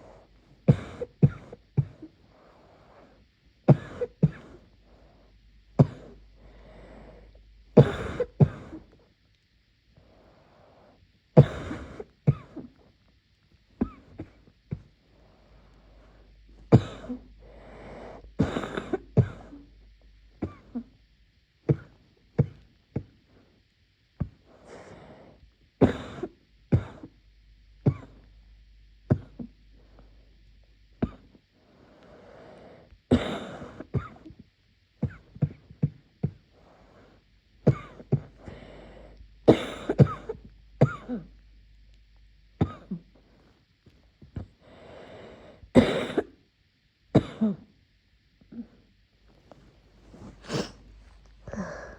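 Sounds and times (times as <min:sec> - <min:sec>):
person coughing: 0:00.7 - 0:02.1, 0:03.7 - 0:04.6, 0:07.8 - 0:08.8, 0:11.4 - 0:12.7, 0:13.8 - 0:14.9, 0:16.8 - 0:17.3, 0:18.4 - 0:19.7, 0:33.1 - 0:34.3, 0:37.7 - 0:38.3, 0:39.5 - 0:41.3, 0:42.6 - 0:43.0, 0:45.8 - 0:46.3, 0:47.2 - 0:47.7, 0:50.2 - 0:50.8, 0:51.4 - 0:51.9.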